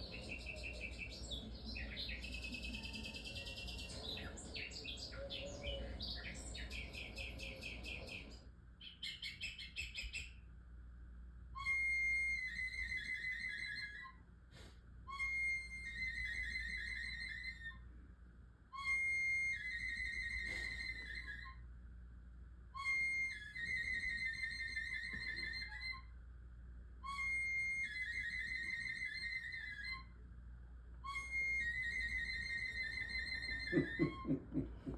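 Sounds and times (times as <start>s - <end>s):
high whistle with warbling trill: 15.1s - 16.7s.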